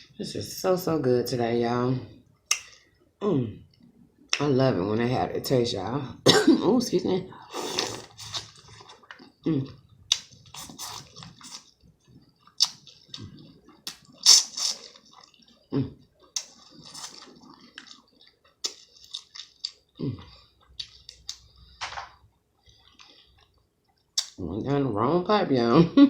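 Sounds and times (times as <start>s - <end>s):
person clearing throat: 6.2s - 6.6s
wet chewing and squelching: 7.5s - 21.6s.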